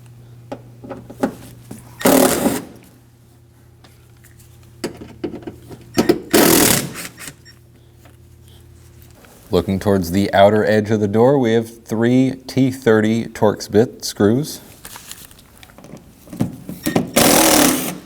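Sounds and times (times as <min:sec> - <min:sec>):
power driver whirring: 0:02.0 - 0:02.8, 0:06.0 - 0:07.5, 0:16.9 - 0:18.0.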